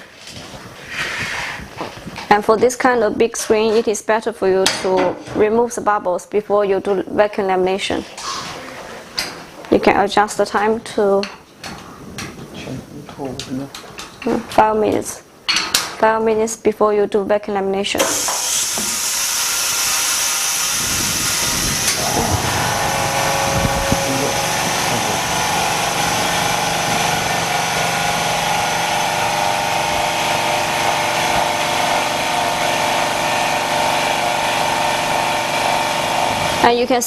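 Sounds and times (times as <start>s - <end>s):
air hissing: 18.0s - 34.5s
motor hum: 18.0s - 36.6s.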